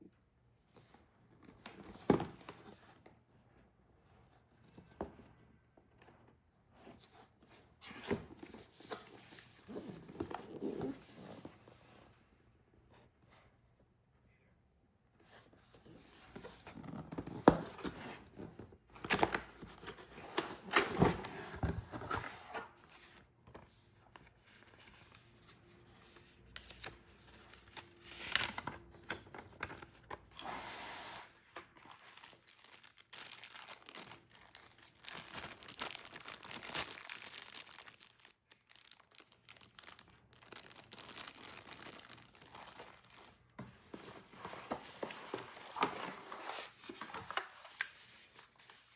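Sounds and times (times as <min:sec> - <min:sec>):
plastic and cardboard crinkling: 0:31.4 - 0:48.9.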